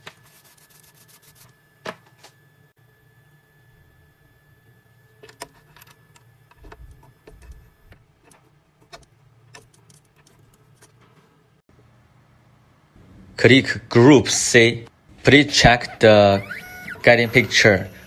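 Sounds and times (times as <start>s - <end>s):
low steady hum: 0.0s - 18.0s
faint high whine: 13.0s - 18.0s.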